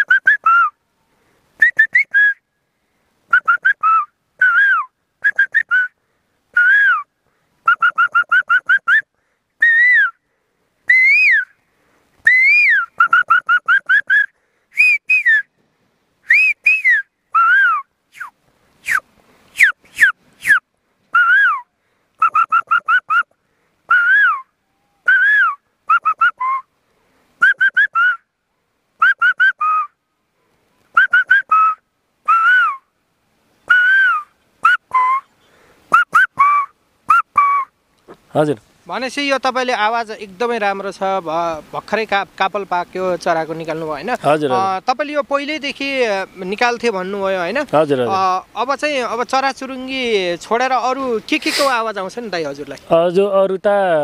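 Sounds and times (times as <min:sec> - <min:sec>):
man whistling bird call: 0:00.0 - 0:00.8, 0:01.6 - 0:02.5, 0:03.3 - 0:10.2, 0:10.9 - 0:11.6, 0:12.2 - 0:15.5, 0:16.2 - 0:26.7, 0:27.4 - 0:28.3, 0:29.0 - 0:30.0, 0:30.8 - 0:32.9, 0:33.6 - 0:37.8.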